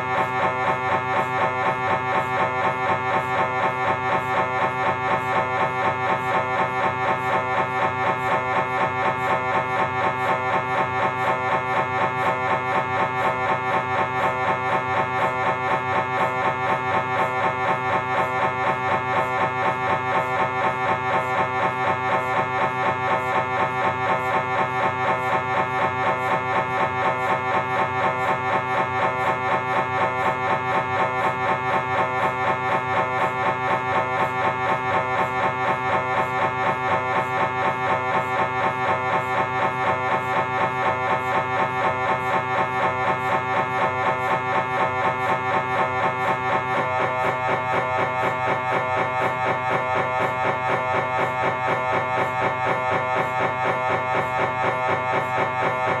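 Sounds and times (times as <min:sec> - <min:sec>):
mri scanner pulsing buzz: 0:00.0 - 0:56.0.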